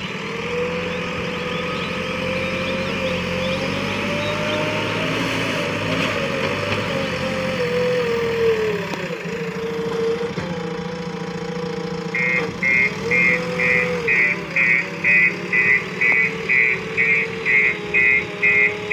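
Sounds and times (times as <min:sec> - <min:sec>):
backhoe diesel engine running: 0:00.0 - 0:18.9
reversing alarm beeping: 0:12.1 - 0:18.9.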